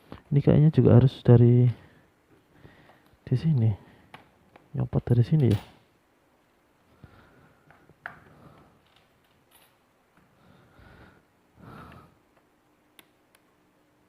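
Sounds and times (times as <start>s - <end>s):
soft breaths through nose: 1.8s - 3.2s.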